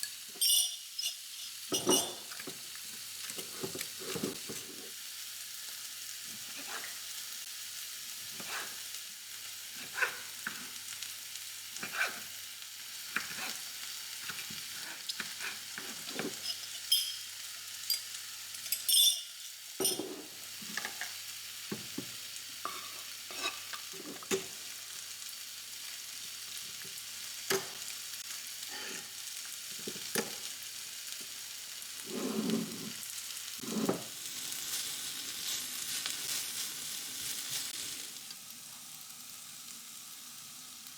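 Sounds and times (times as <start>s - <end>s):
food sizzling in a frying pan: 0.0s - 40.9s
utensil scraping a pan: 8.3s - 8.8s, 11.8s - 12.3s, 13.1s - 17.1s, 22.7s - 24.3s, 28.7s - 29.1s, 32.0s - 33.0s, 33.6s - 34.1s.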